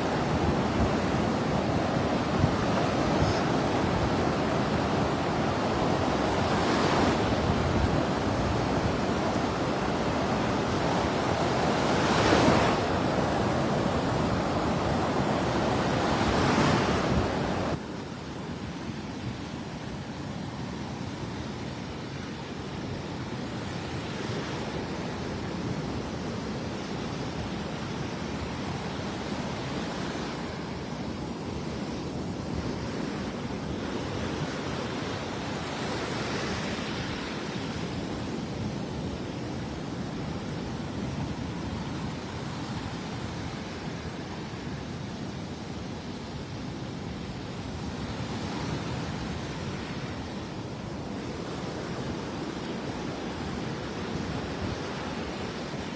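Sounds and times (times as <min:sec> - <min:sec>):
waves breaking on beach: 0:00.0 - 0:17.8, 0:23.2 - 0:55.9.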